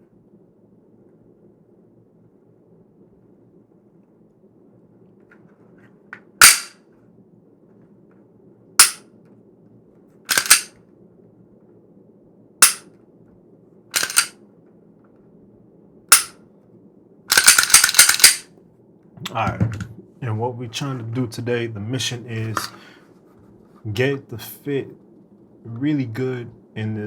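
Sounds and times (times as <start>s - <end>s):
faint steady hum: 0.0s - 27.0s
sharp snapping clicks: 8.8s - 9.0s, 10.3s - 10.7s, 12.6s - 12.8s, 14.0s - 14.3s, 16.1s - 16.4s.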